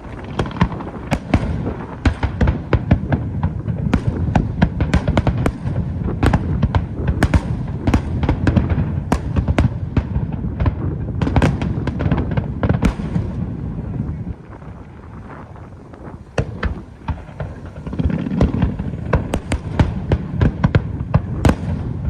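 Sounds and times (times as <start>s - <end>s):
low rumble: 0.0s - 4.6s, 12.9s - 21.2s
fireworks bangs and crackles: 0.0s - 22.0s.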